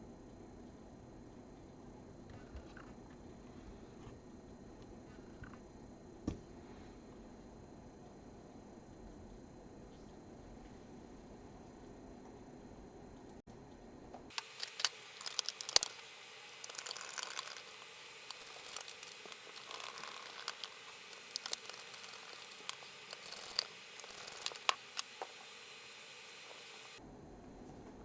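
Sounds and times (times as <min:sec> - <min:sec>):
small parts clicking and tapping: 0:14.3 - 0:27.0.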